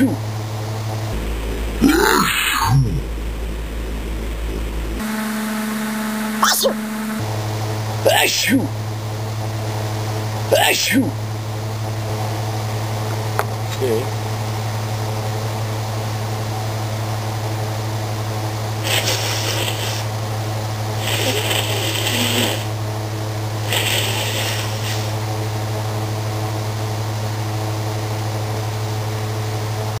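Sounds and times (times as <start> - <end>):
low electrical hum: 0.0 - 30.0
rushes of hissing noise: 18.8 - 20.2, 20.9 - 22.8, 23.4 - 25.3.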